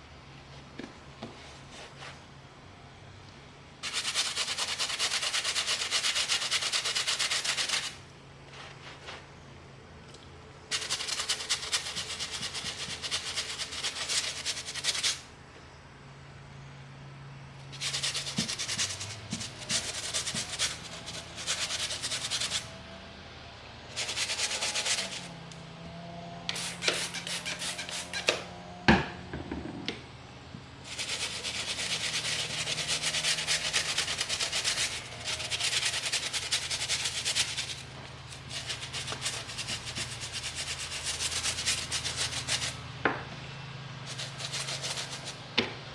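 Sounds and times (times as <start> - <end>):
rubbing leather glove: 17.8 - 22.7, 26.5 - 28.4, 30.9 - 42.8.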